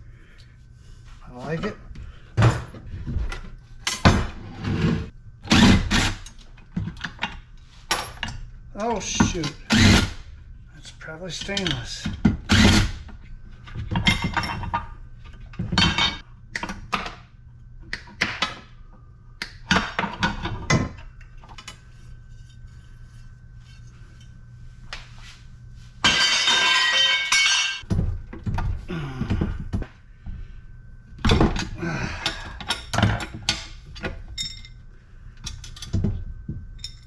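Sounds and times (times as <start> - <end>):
metal parts clattering: 26.0 - 27.8
metal parts clinking and knocking: 26.0 - 27.8, 32.6 - 34.8.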